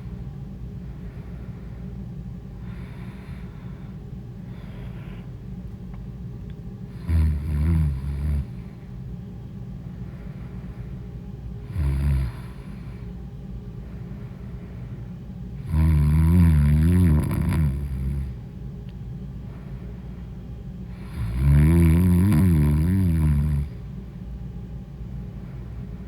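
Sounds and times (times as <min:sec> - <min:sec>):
woman snoring: 0:06.9 - 0:08.6, 0:11.6 - 0:13.0, 0:15.6 - 0:18.4, 0:20.9 - 0:23.8.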